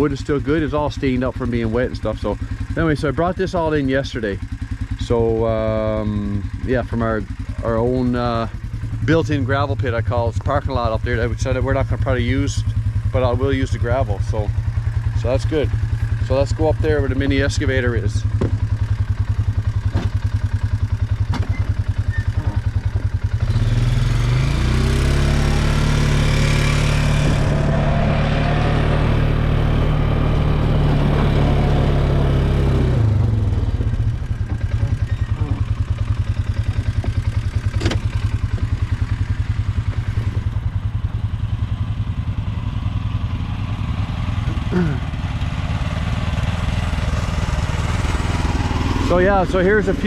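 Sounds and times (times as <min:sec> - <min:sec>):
small engine revving: 0:21.2 - 0:50.0.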